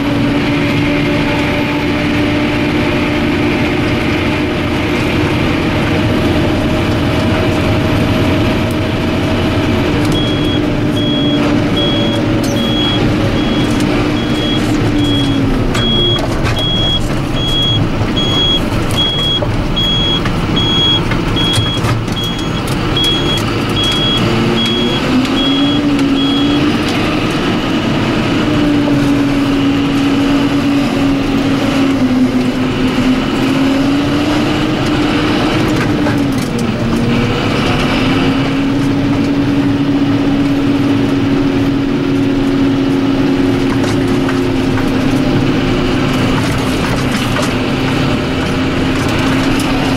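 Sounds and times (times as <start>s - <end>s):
tractor engine running: 0.0s - 49.9s
reversing alarm beeping: 10.1s - 26.7s.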